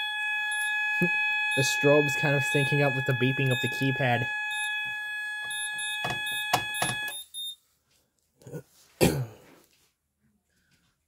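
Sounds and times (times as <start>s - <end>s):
alarm keypad beep: 0.0s - 7.6s
person coughing: 8.4s - 9.6s.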